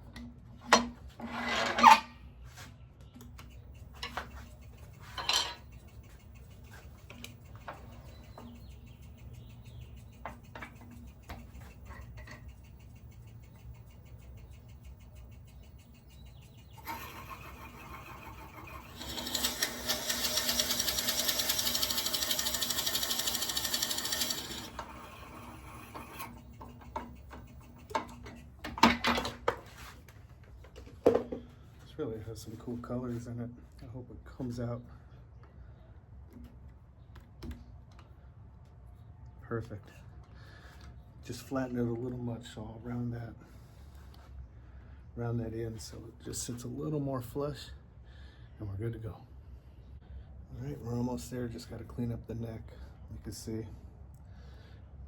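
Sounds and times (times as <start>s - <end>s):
tool scraping spinning wood: 3.5s - 28.4s
wood lathe humming: 16.3s - 27.9s.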